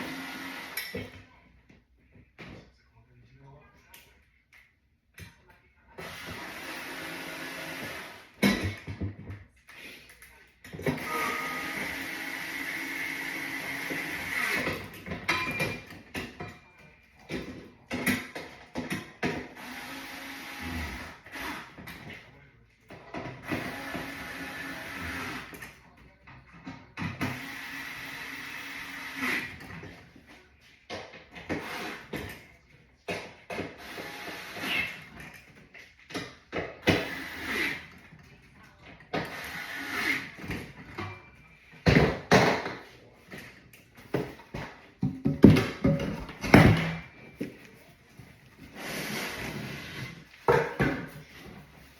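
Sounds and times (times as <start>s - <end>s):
furniture parts and tools knocking: 7.9s - 9.5s, 41.8s - 43.0s, 44.0s - 47.7s, 50.4s - 51.6s.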